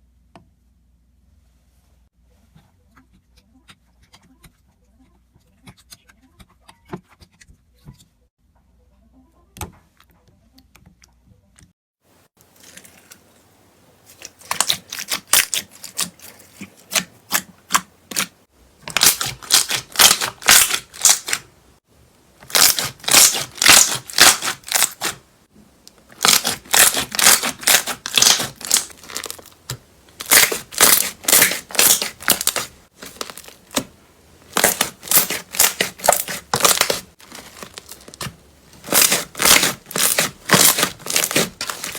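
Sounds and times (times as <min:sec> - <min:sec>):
crunchy slime crackling: 0:14.0 - 0:21.5, 0:22.4 - 0:25.2, 0:26.0 - 0:41.9.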